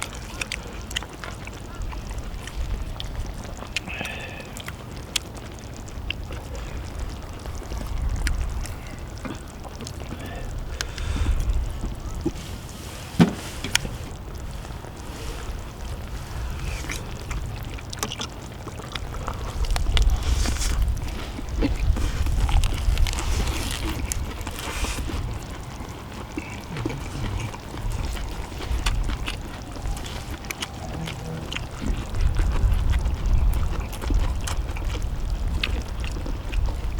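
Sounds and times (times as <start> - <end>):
people chewing and slurping: 0.0 - 36.9
steady low rumble: 5.7 - 36.9.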